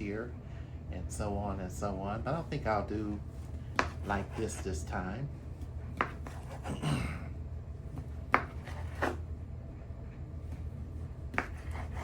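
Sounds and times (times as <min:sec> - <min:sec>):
knife knocking on cutting board: 0:08.3 - 0:09.2
knife slicing sausage: 0:11.4 - 0:12.0.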